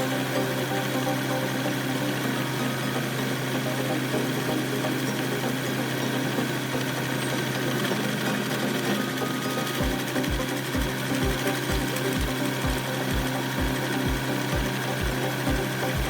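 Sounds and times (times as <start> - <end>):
meat grinder motor humming: 0.0 - 16.0.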